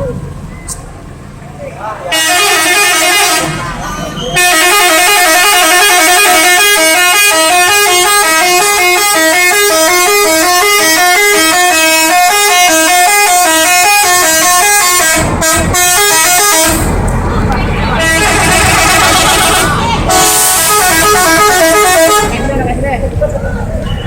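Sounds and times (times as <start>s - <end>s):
multi-tone musical air horn: 2.1s - 16.9s, 18.0s - 22.4s.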